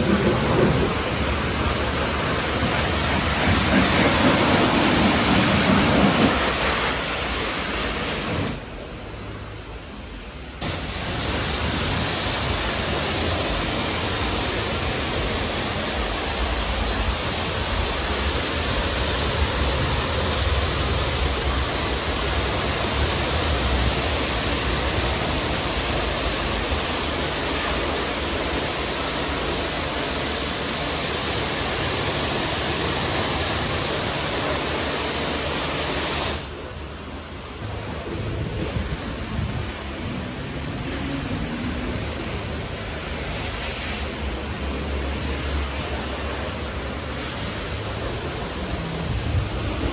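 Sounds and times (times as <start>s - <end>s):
water jet spraying car: 0.0s - 49.9s.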